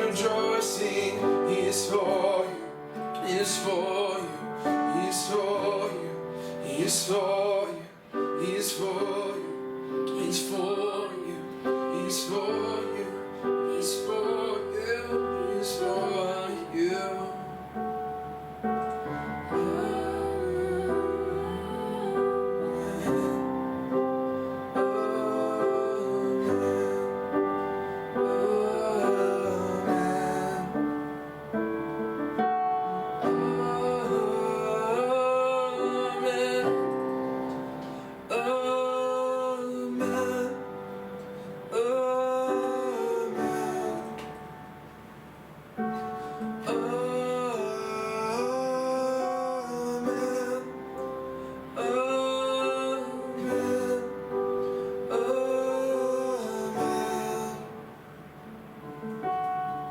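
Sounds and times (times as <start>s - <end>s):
sustained keyboard chords: 0.0s - 59.9s
woman singing: 19.2s - 24.1s, 33.1s - 37.3s.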